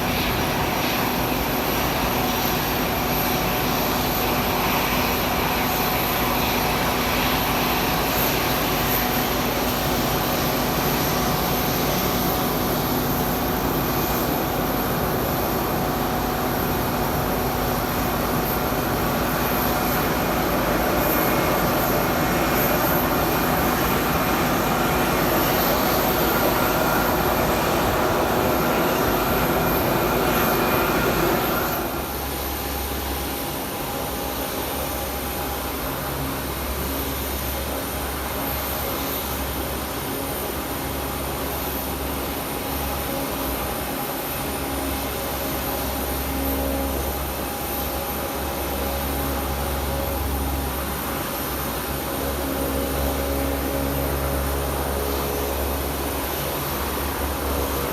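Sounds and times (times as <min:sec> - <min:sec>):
aircraft engines roaring: 0:00.0 - 0:57.9.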